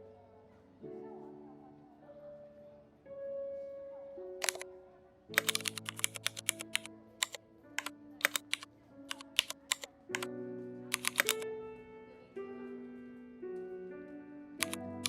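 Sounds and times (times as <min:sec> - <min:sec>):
background music with held notes: 0:00.0 - 0:15.0
computer keyboard typing: 0:04.4 - 0:04.6, 0:05.4 - 0:10.3, 0:10.9 - 0:11.4, 0:14.6 - 0:15.0.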